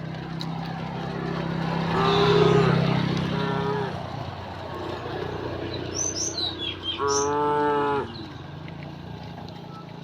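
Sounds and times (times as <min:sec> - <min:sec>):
vehicle engine low hum: 0:00.0 - 0:10.0
cattle mooing: 0:01.9 - 0:04.1, 0:06.9 - 0:08.3
bird chirps: 0:05.7 - 0:07.4.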